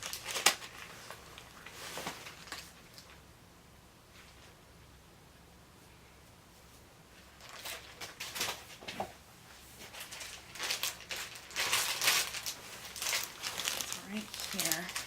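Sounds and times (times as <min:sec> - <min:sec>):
plastic bag rustling: 0:00.0 - 0:03.2, 0:07.2 - 0:15.0.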